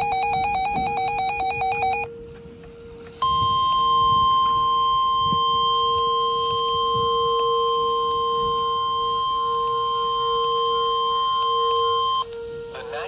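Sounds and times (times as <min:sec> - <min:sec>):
electronic alert tone warbling: 0:00.0 - 0:02.1
steady high-pitched alarm tone: 0:00.0 - 0:02.2, 0:02.8 - 0:13.0.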